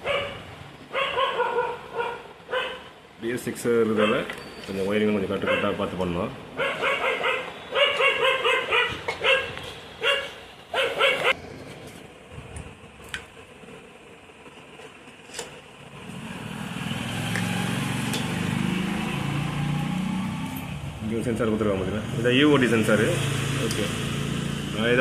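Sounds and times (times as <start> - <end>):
dog yapping: 0.0 - 2.9, 4.0 - 4.3, 5.4 - 5.8, 6.6 - 11.4.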